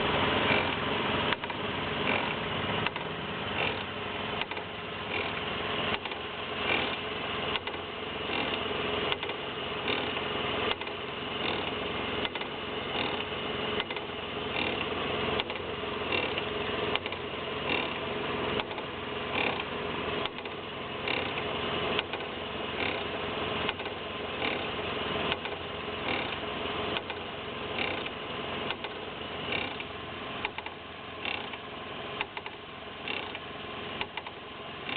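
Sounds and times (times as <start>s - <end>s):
brakes rubbing rhythmically: 0.0s - 34.9s
steady hum: 0.0s - 34.9s.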